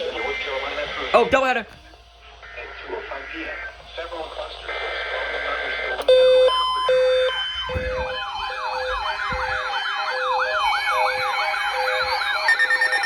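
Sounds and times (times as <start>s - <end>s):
steady beep: 6.0s - 13.0s
alternating high and low tones: 6.1s - 13.0s
yelping siren sweep: 6.1s - 13.0s.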